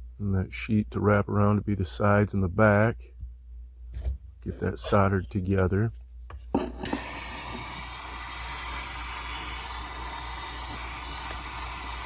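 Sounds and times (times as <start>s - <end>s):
gas torch hissing: 6.6s - 12.0s.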